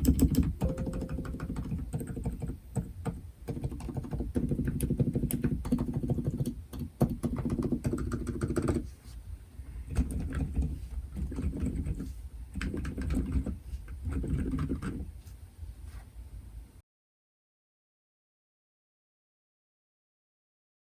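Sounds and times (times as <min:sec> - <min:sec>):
muted keyboard typing: 0:00.0 - 0:08.8, 0:09.9 - 0:15.1.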